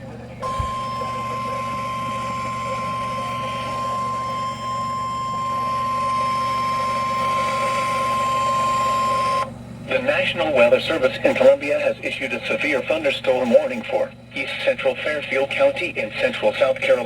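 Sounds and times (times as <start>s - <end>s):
low hum: 0.3s - 7.7s
steady alarm tone: 0.4s - 9.5s.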